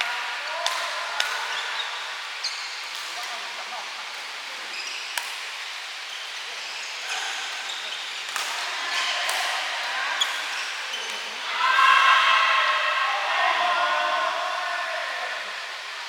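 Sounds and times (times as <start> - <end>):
shoes squeaking: 4.7 - 5.2
people calling out: 11.4 - 15.8.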